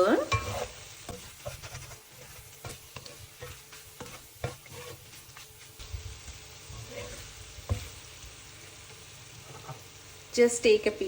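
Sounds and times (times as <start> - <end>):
spatula scraping a frying pan: 0.0 - 8.0, 9.4 - 9.9
oil sizzling: 0.0 - 11.0.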